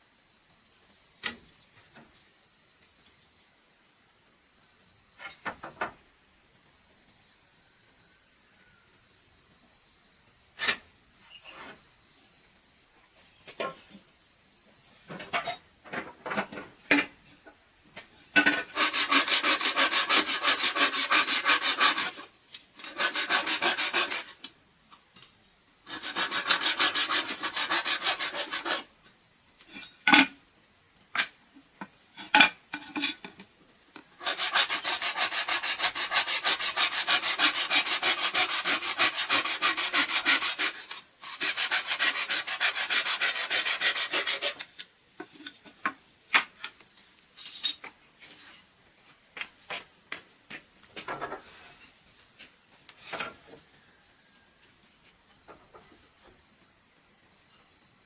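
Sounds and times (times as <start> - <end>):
hand tool scraping wood: 18.4 - 24.5, 25.9 - 28.9, 32.2 - 33.4, 34.0 - 45.8.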